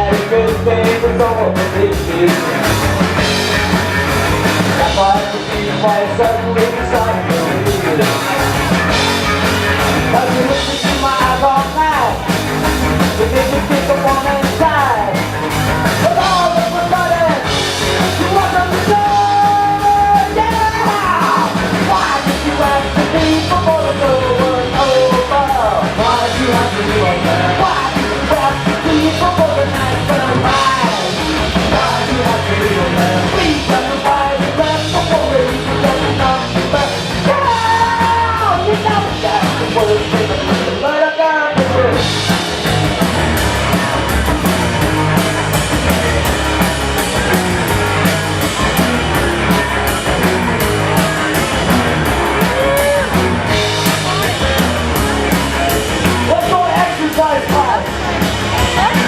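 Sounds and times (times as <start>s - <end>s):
person singing: 0.0s - 3.1s, 4.7s - 8.4s, 10.1s - 12.3s, 15.9s - 42.0s, 50.9s - 54.8s
drum kit: 0.0s - 59.0s
live punk rock band: 0.0s - 59.0s.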